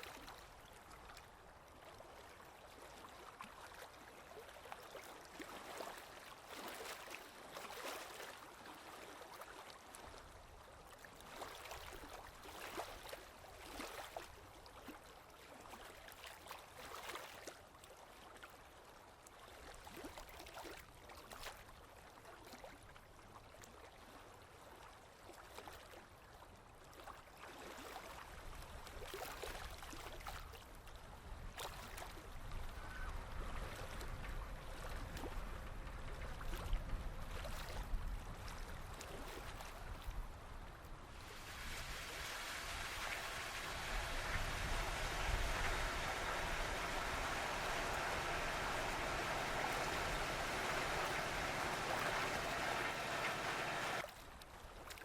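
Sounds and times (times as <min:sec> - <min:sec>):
water lapping and splashing: 0:00.0 - 0:55.0
rushing water: 0:40.6 - 0:54.1.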